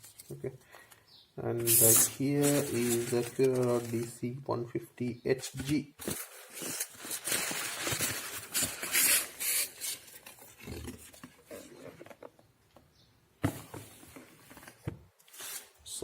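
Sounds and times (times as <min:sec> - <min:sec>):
packaging rustling: 0:01.6 - 0:04.2, 0:05.6 - 0:12.3.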